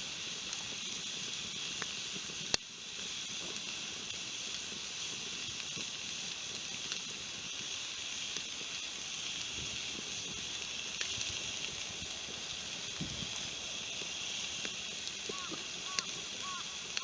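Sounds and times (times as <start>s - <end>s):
fire crackles and pops: 0.0s - 17.0s
steak sizzling over campfire: 0.0s - 17.0s.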